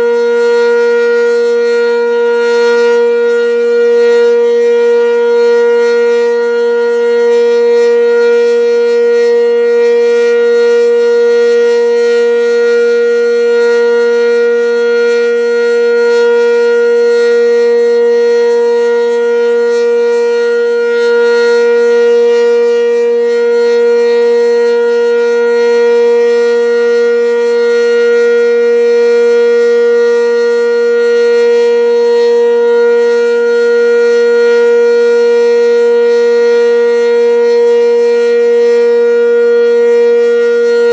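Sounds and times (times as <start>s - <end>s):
warning siren steady tone: 0.0s - 40.9s.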